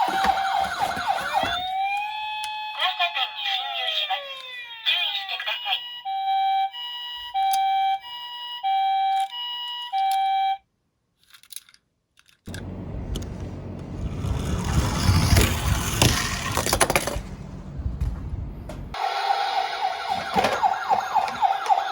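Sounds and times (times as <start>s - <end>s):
toy vehicles rolling down plastic slope: 0.0s - 1.5s, 14.0s - 17.3s, 19.7s - 21.9s
two-tone ambulance siren: 0.0s - 10.6s, 18.9s - 21.9s.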